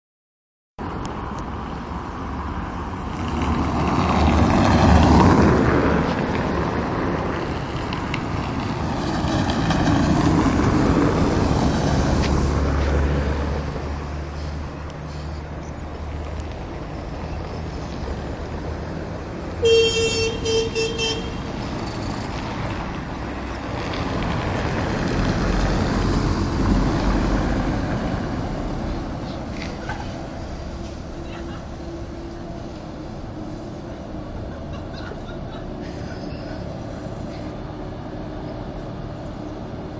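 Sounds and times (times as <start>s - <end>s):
vehicles passing: 0.8s - 39.9s
car horn toots: 19.6s - 21.4s.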